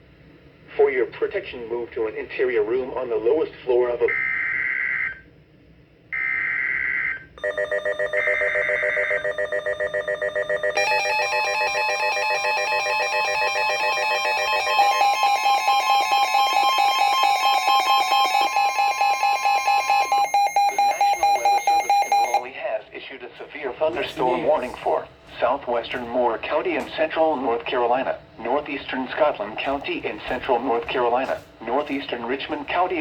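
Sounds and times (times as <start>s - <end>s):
pulsing weather radio alarm: 3.9s - 5.2s, 6.1s - 33.0s
steady warning alarm tone: 4.0s - 5.2s, 6.1s - 33.0s
warbling data tones: 7.4s - 22.5s.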